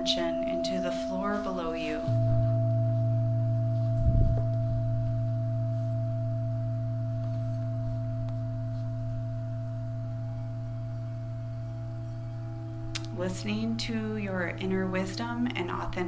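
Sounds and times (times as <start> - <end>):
singing bowl humming tone: 0.0 - 16.0.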